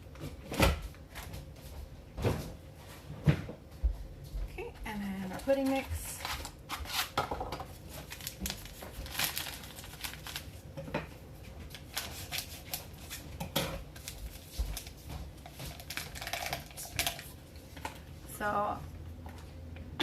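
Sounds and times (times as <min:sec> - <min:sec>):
packaging crinkling: 0:05.4 - 0:10.6, 0:11.6 - 0:13.3, 0:13.9 - 0:17.4.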